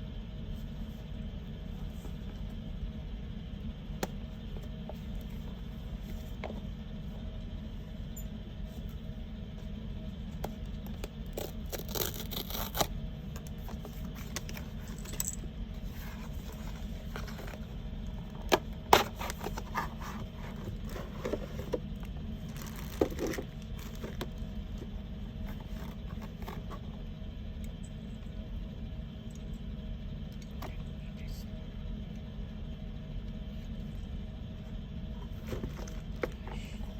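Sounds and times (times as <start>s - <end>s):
steady low rumble: 0.0s - 36.9s
plastic packaging being unwrapped: 11.3s - 12.9s, 22.5s - 24.2s.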